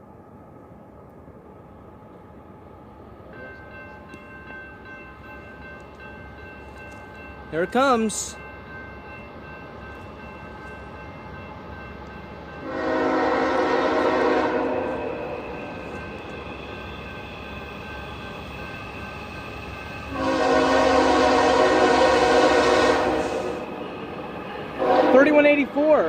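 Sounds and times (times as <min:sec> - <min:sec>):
locomotive horn chords: 0:12.6 - 0:15.4, 0:20.1 - 0:23.6, 0:24.8 - 0:25.4.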